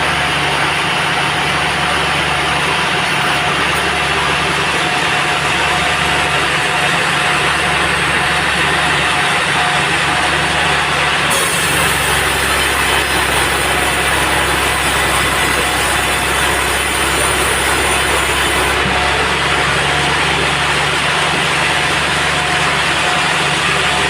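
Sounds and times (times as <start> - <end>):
sawmill engine humming: 0.0 - 24.0
saw blade cutting log hiss: 11.3 - 18.8.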